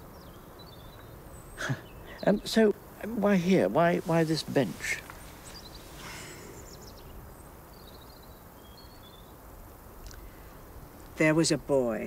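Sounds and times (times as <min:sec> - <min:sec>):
faint bird chirps: 0:00.0 - 0:03.1, 0:04.8 - 0:09.4.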